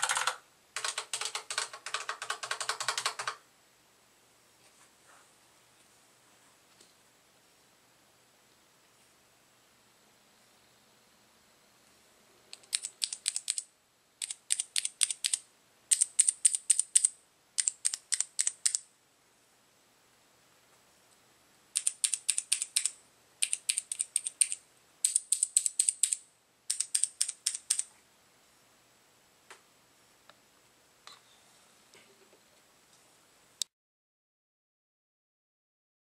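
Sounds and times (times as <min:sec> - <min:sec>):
mechanical keyboard typing clacks: 0:00.0 - 0:03.4, 0:12.5 - 0:18.8, 0:21.8 - 0:27.9.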